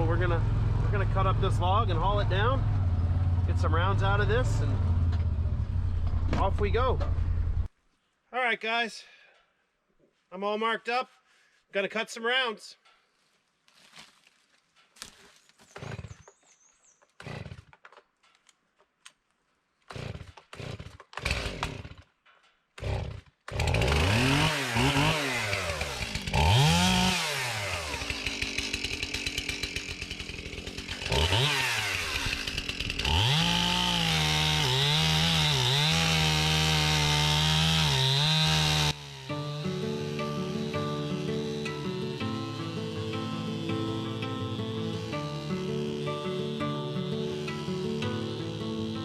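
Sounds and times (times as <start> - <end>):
chainsaw engine revving: 15.7 - 16.2, 17.2 - 17.7, 19.9 - 22.1, 22.8 - 49.0.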